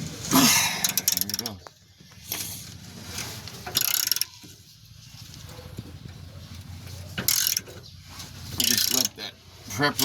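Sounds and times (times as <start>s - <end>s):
ratchet pawl clicking: 0.8s - 1.5s, 3.7s - 4.4s, 7.3s - 7.6s, 8.6s - 9.2s.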